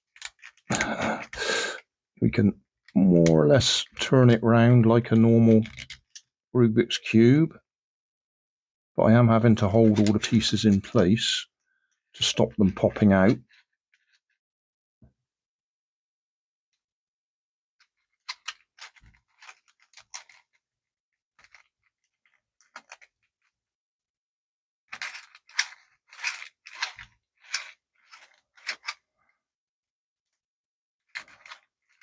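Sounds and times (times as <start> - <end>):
plastic puzzle cube clicking: 0.1 - 1.4, 5.6 - 6.2, 24.9 - 29.0, 31.1 - 32.0.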